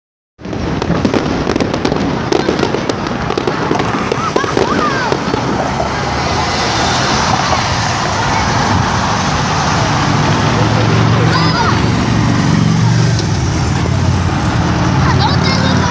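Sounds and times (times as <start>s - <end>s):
fireworks crackling pops: 0.4s - 7.8s.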